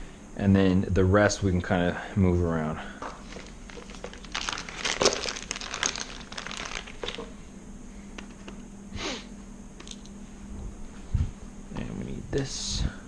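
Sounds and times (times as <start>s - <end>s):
faint steady hum: 0.0s - 13.0s
hands handling mounting hardware: 3.0s - 7.4s, 9.8s - 10.2s
small clicks and knocks: 8.2s - 8.6s, 9.8s - 10.1s.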